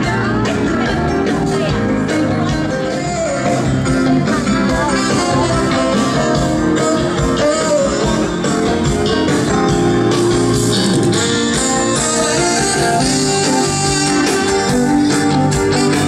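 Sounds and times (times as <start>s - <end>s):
electric guitar: 0.0s - 16.0s
rock band playing: 0.0s - 16.0s.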